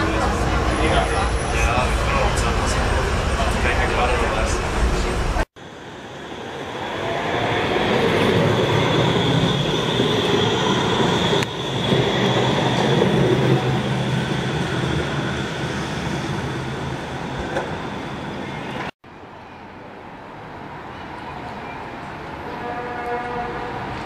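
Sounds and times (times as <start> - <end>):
tram wheel squeal: 4.1 - 18.9.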